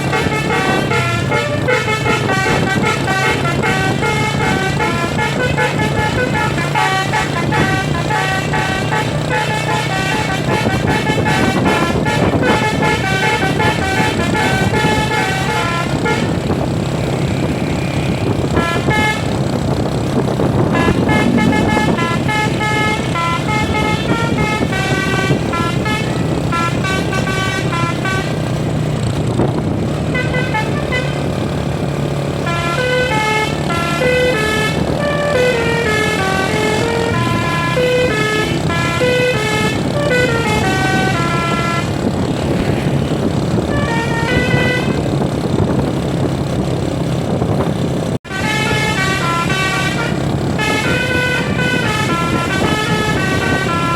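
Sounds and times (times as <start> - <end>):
musical bus air horn: 0.0 - 31.5, 32.4 - 45.6, 48.2 - 53.9
bus engine running: 0.0 - 53.9.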